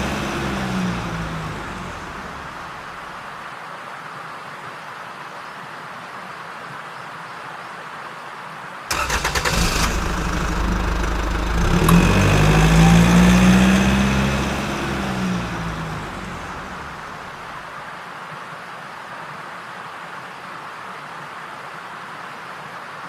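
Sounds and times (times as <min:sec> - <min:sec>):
engine starting and running: 0:00.0 - 0:03.2, 0:08.9 - 0:17.6.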